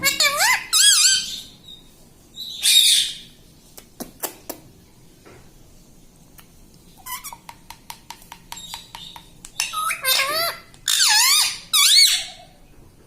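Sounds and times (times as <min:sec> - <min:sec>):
parrot clicking: 0:07.4 - 0:09.9.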